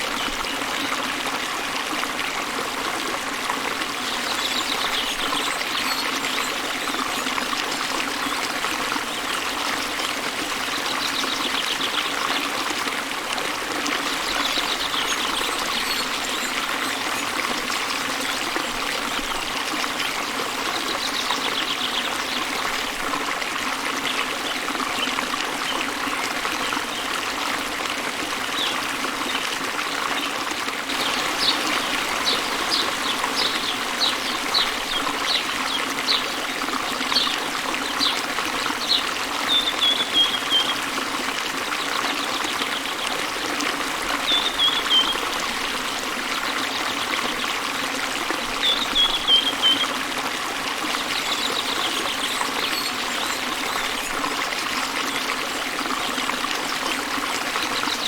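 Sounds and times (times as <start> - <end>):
waterfall and river flowing: 0.0 - 58.0
birds singing trills: 30.9 - 36.4, 37.1 - 40.8, 44.2 - 45.2, 48.6 - 50.0.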